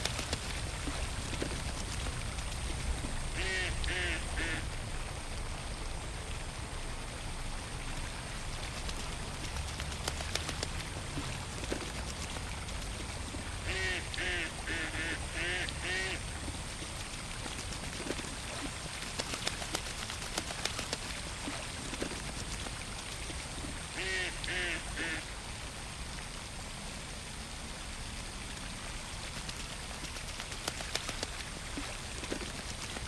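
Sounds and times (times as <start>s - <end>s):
low rumble of pond ambience: 0.0s - 33.0s
ducks quacking: 3.4s - 4.6s, 13.7s - 16.2s, 24.0s - 25.2s.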